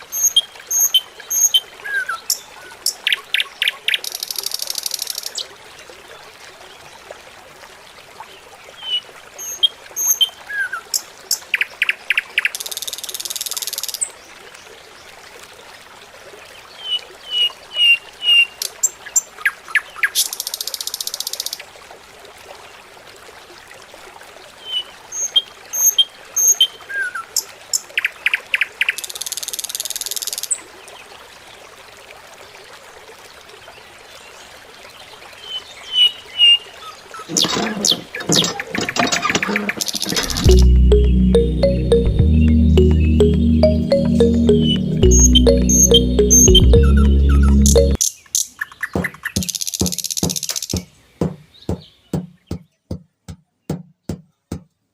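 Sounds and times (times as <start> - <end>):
bird chirps: 37.3 - 53.1.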